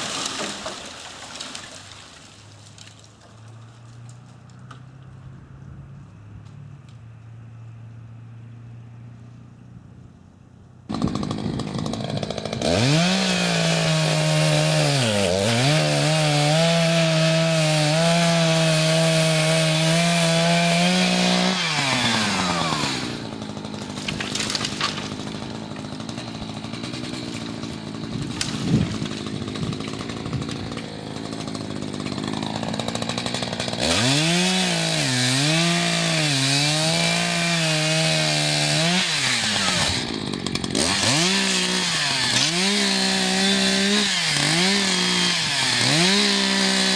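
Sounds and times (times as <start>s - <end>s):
chainsaw cutting wood: 0.0s - 1.7s, 10.9s - 46.9s
chainsaw idling: 10.9s - 46.9s.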